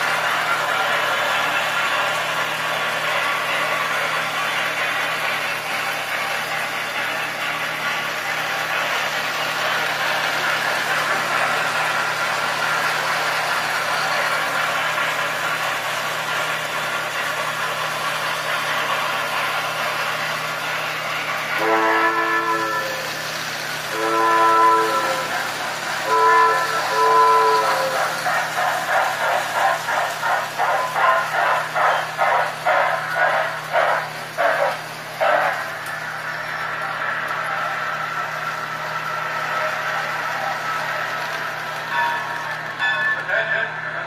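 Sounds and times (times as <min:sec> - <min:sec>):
train running: 0:00.0 - 0:44.0
train whistle blasts: 0:21.6 - 0:23.2, 0:23.9 - 0:28.2.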